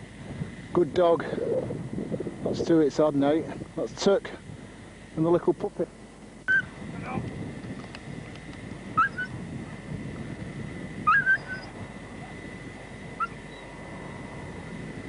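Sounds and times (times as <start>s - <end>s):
wind noise: 0.0s - 5.5s, 6.5s - 15.0s.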